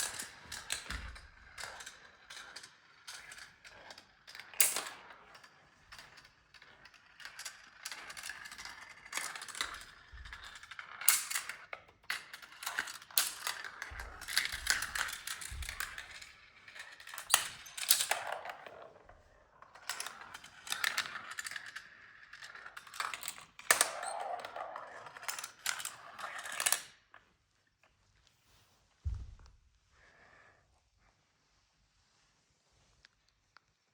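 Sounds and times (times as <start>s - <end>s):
marbles clicking and knocking: 0.0s - 18.9s
marbles rolling through plastic track: 0.0s - 27.2s.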